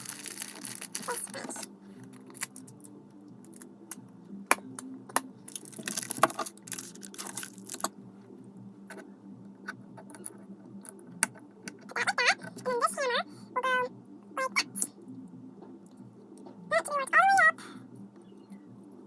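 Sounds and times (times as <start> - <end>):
plastic pieces clicking: 0.0 - 3.6, 5.5 - 7.9.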